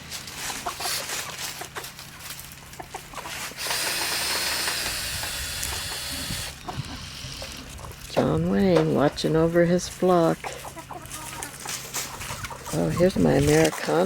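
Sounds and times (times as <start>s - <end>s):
chickens clucking softly: 0.4s - 3.6s, 10.4s - 14.0s.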